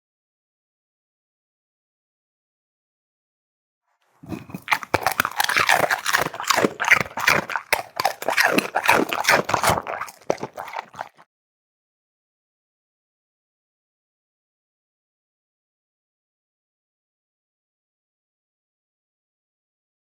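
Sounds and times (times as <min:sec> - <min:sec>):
animal chewing and crunching: 0:04.2 - 0:11.2.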